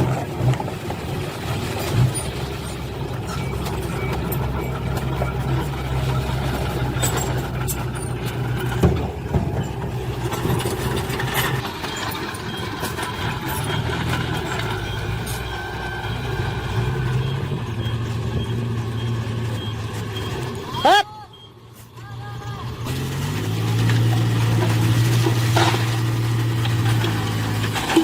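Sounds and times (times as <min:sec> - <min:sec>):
diesel machinery engine running: 0:00.0 - 0:28.0
faint reversing alarm beeping: 0:03.2 - 0:06.8, 0:11.8 - 0:22.5.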